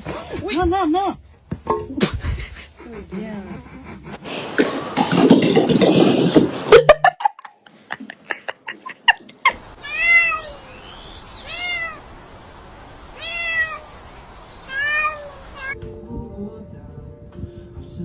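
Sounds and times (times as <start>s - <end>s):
cat meowing: 9.8s - 10.8s, 11.4s - 12.1s, 13.1s - 14.0s, 14.6s - 15.8s.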